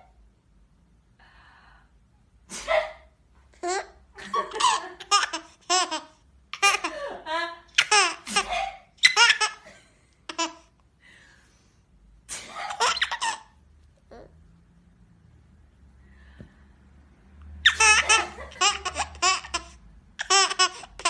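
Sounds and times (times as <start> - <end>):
baby girl laughing: 2.6 - 10.8, 12.4 - 14.3, 17.6 - 21.0.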